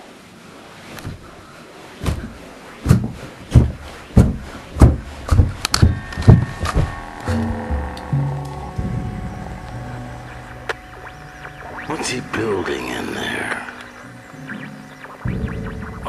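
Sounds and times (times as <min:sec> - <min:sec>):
heavy banging and clanking: 0:02.9 - 0:09.4
droning pitched tone: 0:05.5 - 0:16.0.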